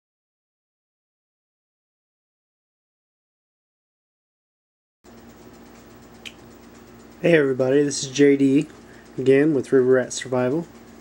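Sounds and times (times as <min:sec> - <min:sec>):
faint hiss with low hum: 0:05.1 - 0:11.0.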